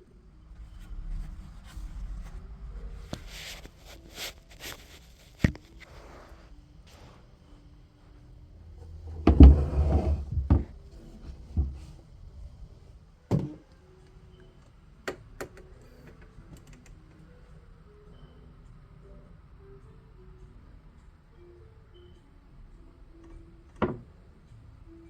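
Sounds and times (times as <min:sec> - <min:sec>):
rustling and knocking of objects: 0:00.6 - 0:07.3, 0:08.7 - 0:13.7.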